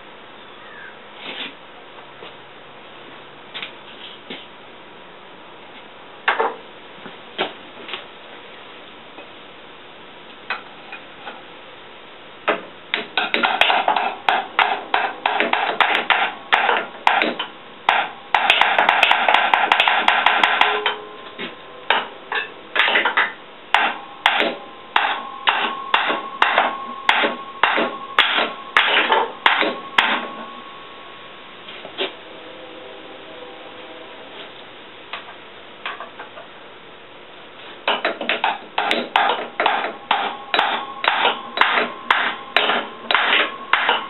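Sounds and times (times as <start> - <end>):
hammer striking steel: 12.5 - 31.0, 37.8 - 44.0.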